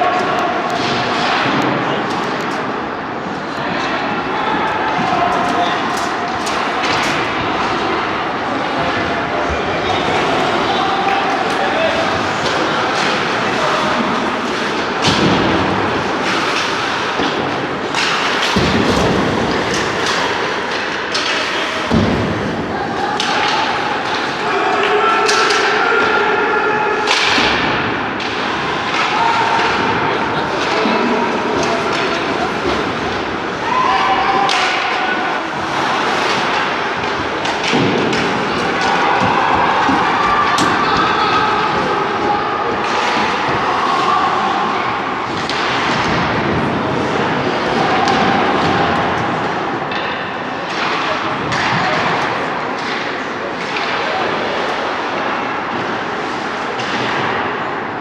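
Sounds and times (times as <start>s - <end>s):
ice rink din: 0.0s - 58.0s
heavy thud on boards: 18.5s - 20.1s.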